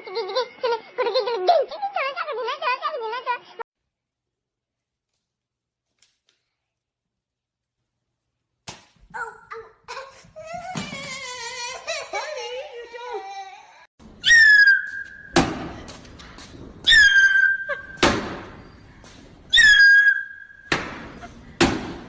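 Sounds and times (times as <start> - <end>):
whistle blasts: 14.2 - 15.4, 19.5 - 20.8.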